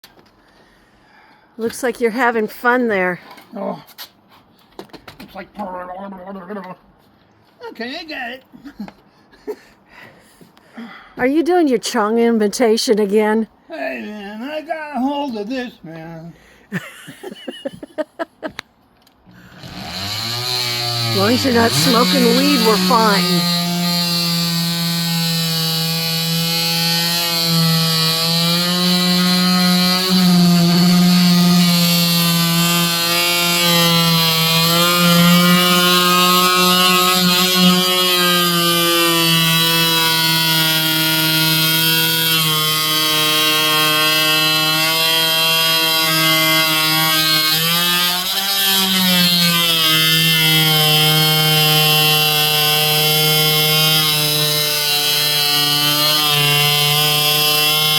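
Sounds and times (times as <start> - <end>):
power tool cutting wood: 19.3 - 57.9.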